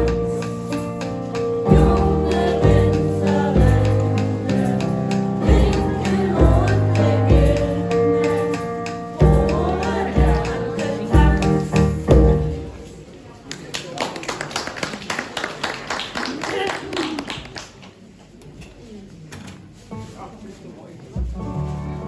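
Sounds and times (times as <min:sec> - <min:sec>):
group of voices singing: 0:00.0 - 0:00.8, 0:01.5 - 0:12.8
stepping bass line: 0:01.7 - 0:04.8.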